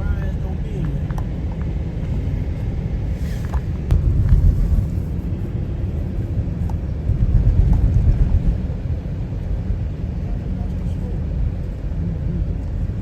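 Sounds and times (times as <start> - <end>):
car rumbling on road: 0.0 - 13.0.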